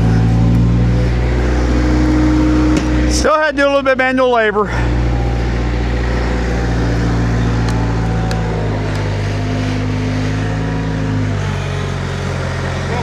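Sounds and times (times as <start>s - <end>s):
skid steer engine running: 0.0s - 13.0s.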